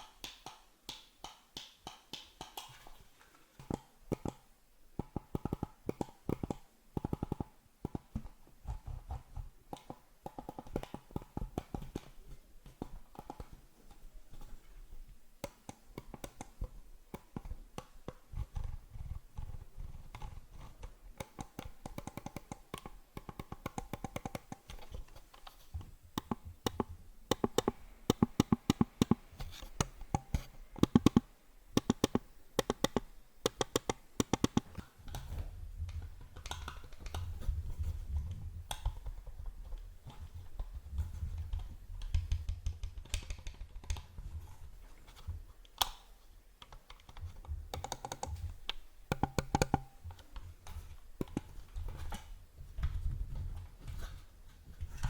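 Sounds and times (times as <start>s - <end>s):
computer mouse clicking: 0.0s - 3.0s, 3.6s - 14.7s, 15.4s - 25.6s, 26.2s - 37.5s, 41.3s - 44.1s, 45.1s - 50.4s.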